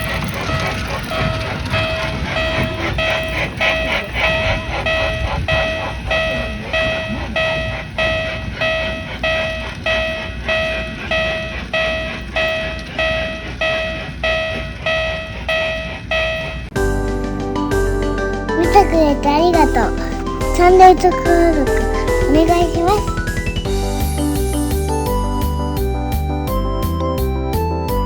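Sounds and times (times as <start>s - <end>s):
level-crossing warning bell: 0.0s - 16.8s.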